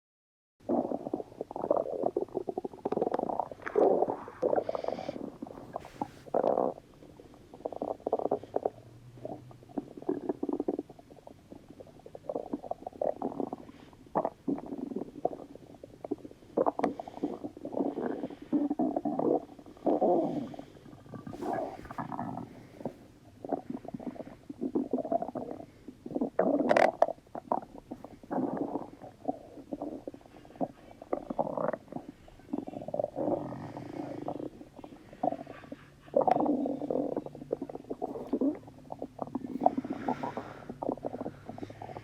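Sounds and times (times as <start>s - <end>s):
stomach rumbling and gurgling: 0.6s - 42.0s.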